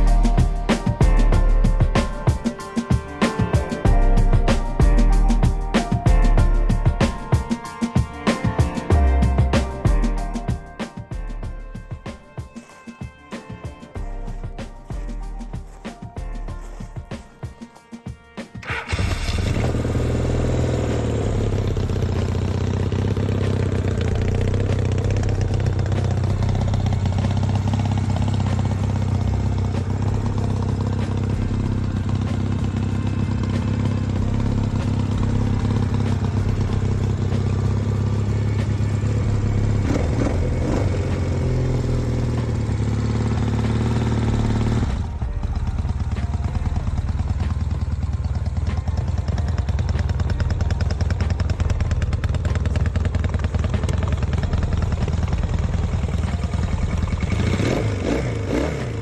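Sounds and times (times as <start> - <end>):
motorcycle engine idling: 18.6 - 59.0.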